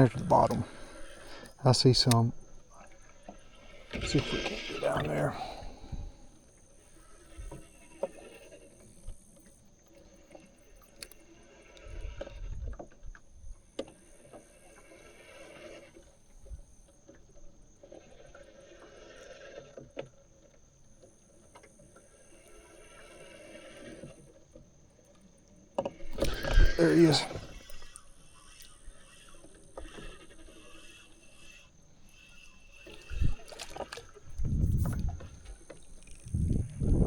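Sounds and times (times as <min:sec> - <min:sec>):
light clicks: 0:01.2 - 0:02.4.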